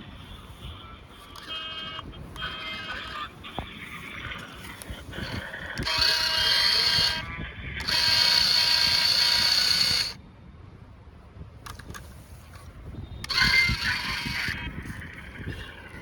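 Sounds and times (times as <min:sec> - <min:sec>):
toy electric motor whining: 0:01.3 - 0:10.2, 0:13.2 - 0:16.0.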